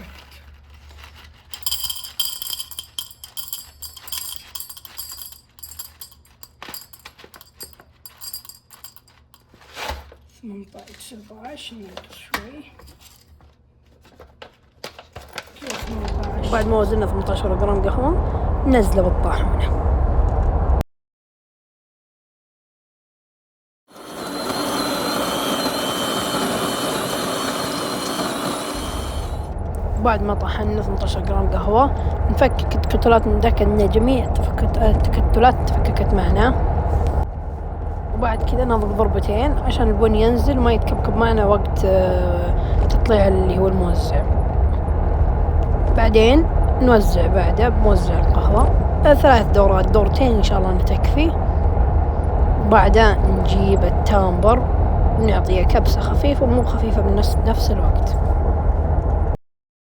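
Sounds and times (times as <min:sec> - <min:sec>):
coffee beans rattling into a cup: 0:00.4 - 0:09.6.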